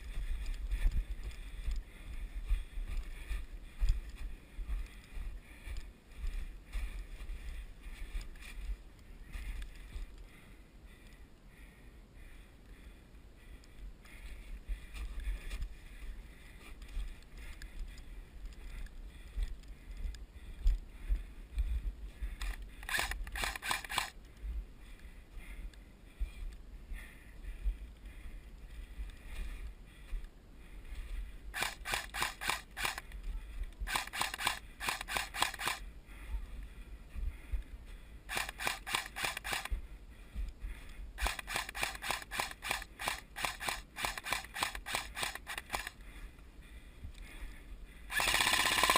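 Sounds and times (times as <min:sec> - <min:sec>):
low rumble of handling or wind: 0:00.0 - 0:48.9
airsoft gun firing bursts: 0:22.8 - 0:24.2, 0:31.6 - 0:33.0, 0:33.9 - 0:35.8, 0:38.3 - 0:39.7, 0:41.2 - 0:45.9, 0:48.1 - 0:48.9.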